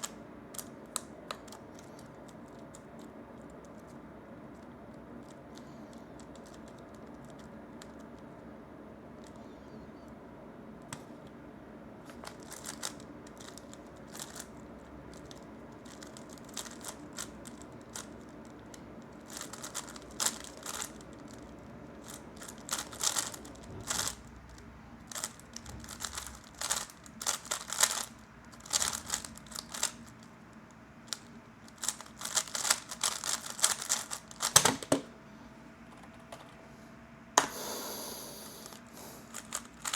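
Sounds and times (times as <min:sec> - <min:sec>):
puzzle cube clicking: 0:31.8 - 0:35.0.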